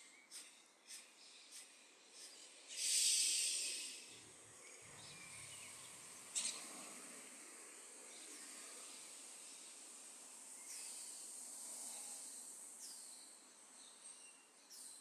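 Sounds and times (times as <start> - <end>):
faint steady hiss: 0.0 - 15.0
hissing breath out: 0.3 - 4.1.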